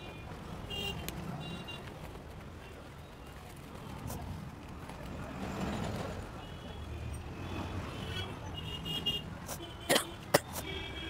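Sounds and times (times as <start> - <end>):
road traffic rumbling: 0.0 - 11.0
vehicle horns: 0.7 - 1.9, 6.4 - 11.0.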